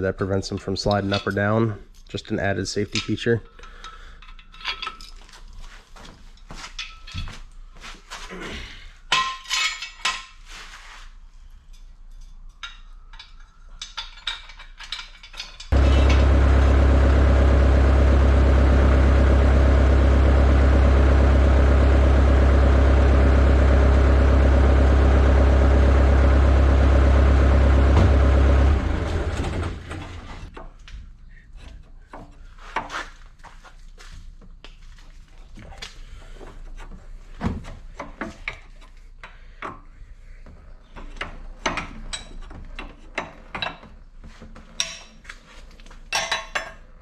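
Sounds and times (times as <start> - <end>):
metal tools clinking: 0.6 - 5.7, 6.3 - 7.3, 9.1 - 10.4, 11.6 - 16.3
motor running: 15.7 - 30.5.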